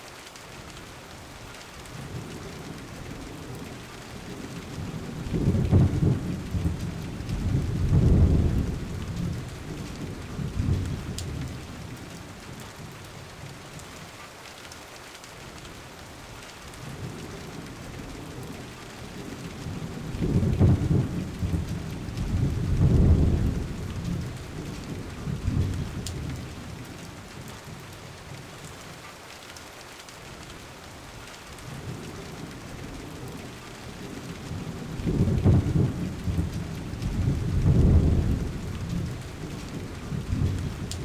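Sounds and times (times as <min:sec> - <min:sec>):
steady rain: 0:00.0 - 0:41.0
rolling thunder rumbles: 0:02.0 - 0:12.2, 0:16.8 - 0:27.8, 0:31.6 - 0:41.0.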